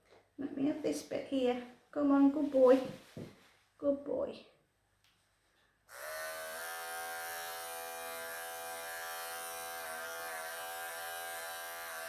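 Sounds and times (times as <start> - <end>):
electric pet clippers buzzing: 5.9 - 12.0.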